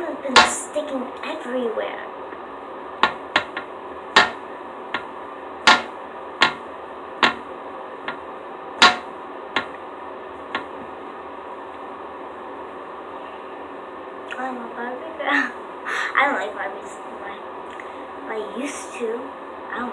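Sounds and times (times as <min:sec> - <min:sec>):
steady background hum: 0:00.0 - 0:19.9
sharp taps: 0:03.0 - 0:09.8, 0:10.5 - 0:10.9.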